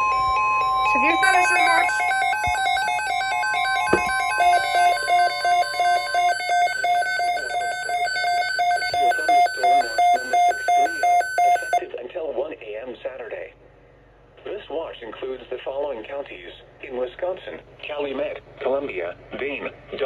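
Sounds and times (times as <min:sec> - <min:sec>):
electronic alarm beeps: 0:00.0 - 0:11.8
weather radio alarm tone: 0:00.0 - 0:11.8.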